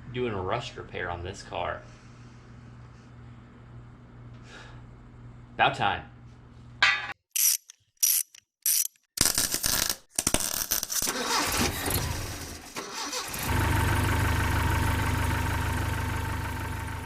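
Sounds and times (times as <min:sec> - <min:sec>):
short clipped sound bits: 0:07.3 - 0:11.1
car engine starting and idling: 0:11.1 - 0:17.0.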